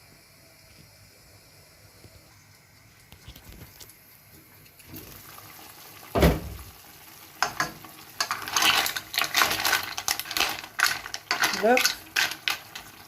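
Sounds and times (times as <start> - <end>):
shellfish bubbling and sizzling in pan: 0.0 - 13.0
shells clattering in pan: 7.4 - 13.0.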